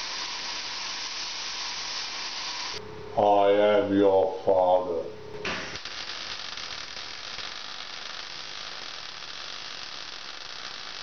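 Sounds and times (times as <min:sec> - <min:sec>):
arc welding crackling hiss: 0:00.0 - 0:02.8, 0:05.5 - 0:11.0.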